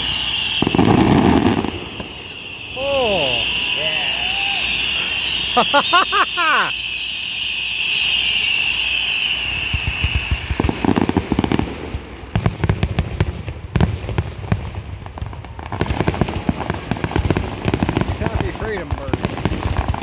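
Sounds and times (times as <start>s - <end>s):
firework whistle: 0.0s - 11.6s
fireworks crackling and popping: 0.0s - 20.0s.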